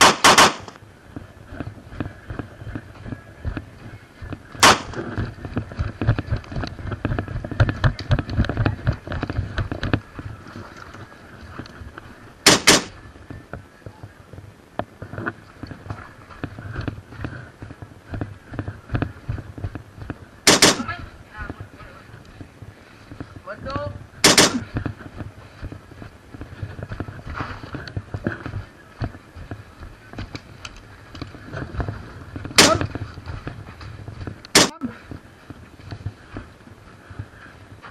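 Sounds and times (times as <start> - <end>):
airsoft gun shots: 0.0 - 0.8, 4.6 - 5.0, 12.4 - 12.9, 20.5 - 20.9, 24.2 - 24.6, 32.6 - 32.8, 34.6 - 34.8
loud sharp cracks: 0.0 - 0.8, 4.6 - 5.0, 12.4 - 12.9, 20.5 - 20.9, 24.2 - 24.6, 32.6 - 32.8, 34.5 - 34.8.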